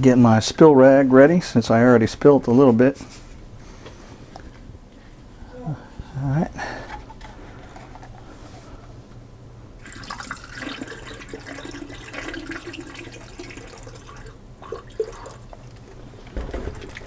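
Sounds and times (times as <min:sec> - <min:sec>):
water pouring through a funnel: 0:09.8 - 0:15.8.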